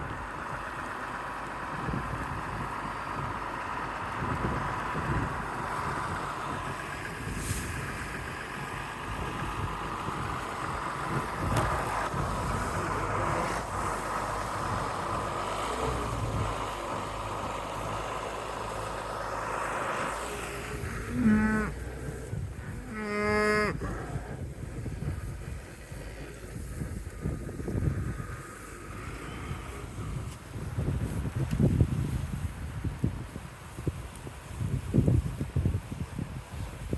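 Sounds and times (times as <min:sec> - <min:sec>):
steady wind noise: 0:01.6 - 0:36.9
cow mooing: 0:20.9 - 0:24.3.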